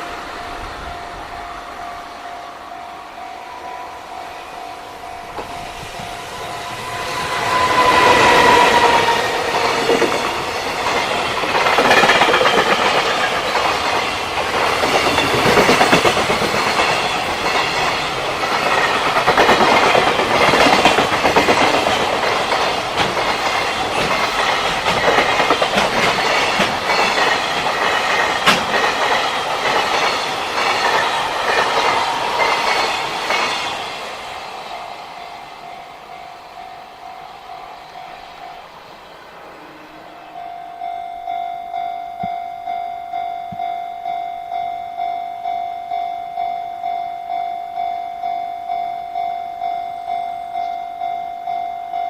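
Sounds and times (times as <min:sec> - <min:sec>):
train wheels clattering over rails: 0:05.2 - 0:39.4.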